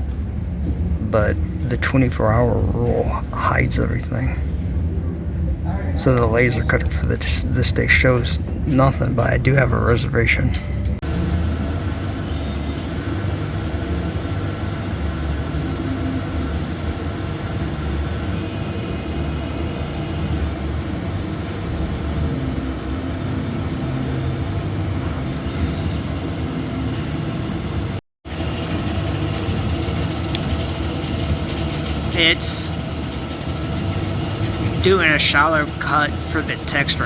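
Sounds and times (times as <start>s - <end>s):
laser cutter mechanical drone: 11.1s - 37.0s.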